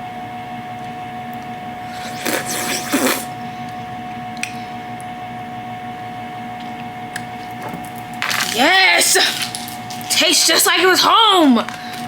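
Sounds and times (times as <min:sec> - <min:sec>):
electrical hum: 0:00.0 - 0:12.0
airy mouth sounds: 0:01.8 - 0:03.4.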